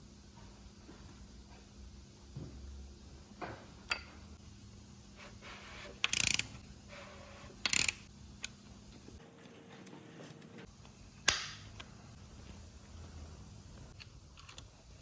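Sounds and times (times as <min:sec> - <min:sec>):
ratchet clicking: 0:06.0 - 0:06.6, 0:07.6 - 0:08.1.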